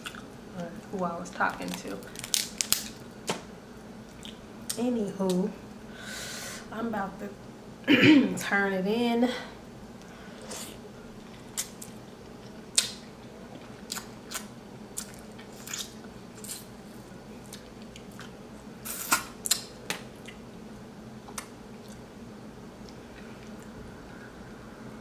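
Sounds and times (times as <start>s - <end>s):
low steady hum: 0.0s - 25.0s
crab shell cracking: 1.6s - 3.0s
chewing: 11.2s - 16.7s, 17.4s - 18.4s, 19.4s - 20.4s.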